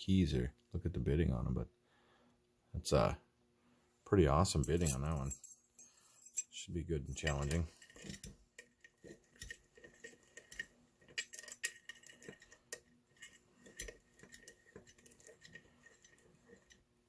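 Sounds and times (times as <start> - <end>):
keys and padlock clinking: 4.6 - 16.8.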